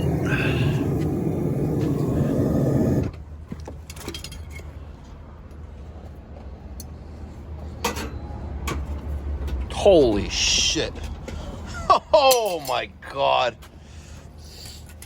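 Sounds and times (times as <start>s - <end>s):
furnace burner roaring: 0.0s - 3.5s
metallic clinks and scrapes of tools: 3.5s - 5.2s, 7.7s - 9.7s, 12.3s - 12.9s, 14.6s - 15.0s.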